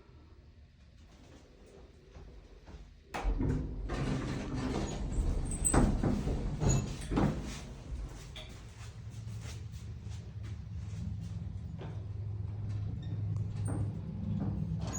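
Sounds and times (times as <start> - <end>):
elevator doors sliding: 3.2 - 9.2, 11.4 - 14.9.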